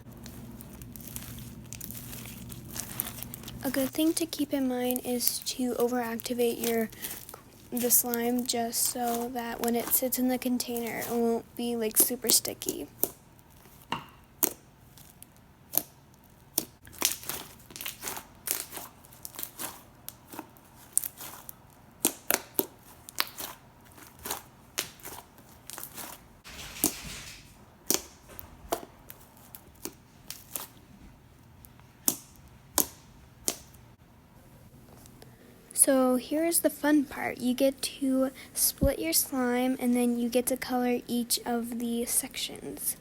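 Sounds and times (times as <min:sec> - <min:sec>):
slime popping and clicking: 0:32.0 - 0:33.8.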